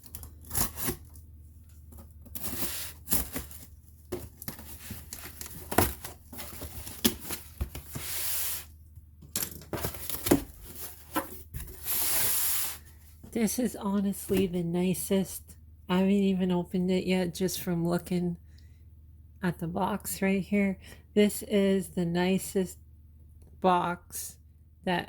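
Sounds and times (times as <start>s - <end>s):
packaging rustling and tearing: 0.0s - 1.2s, 1.9s - 8.7s, 9.7s - 12.8s.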